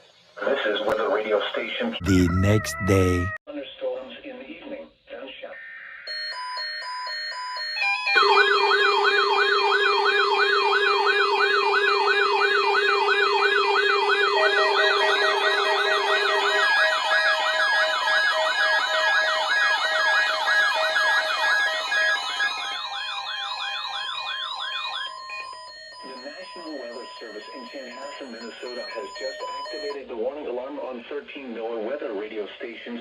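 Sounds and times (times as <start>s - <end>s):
steady alert tone: 2.0s - 3.4s.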